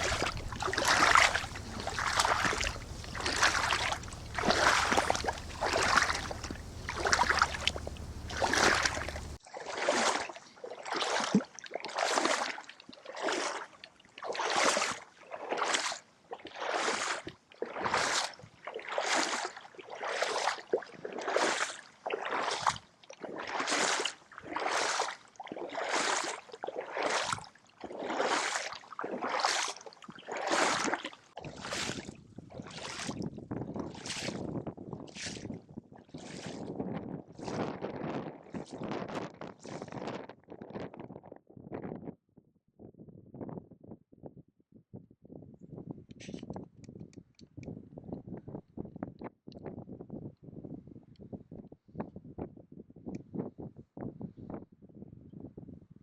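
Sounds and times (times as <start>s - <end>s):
low rumble: 0.0s - 9.4s
water swishing surges: 0.0s - 9.4s.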